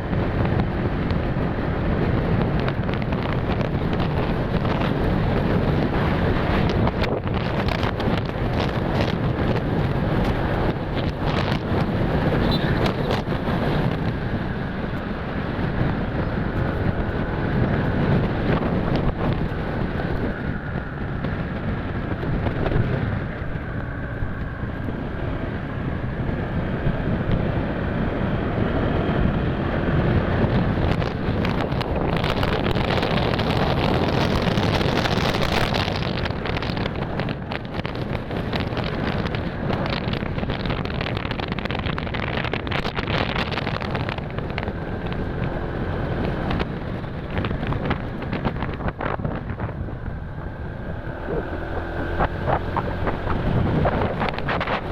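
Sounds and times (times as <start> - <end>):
motorcycle engine running: 0.0 - 54.9
wind buffeting microphone: 0.0 - 54.9.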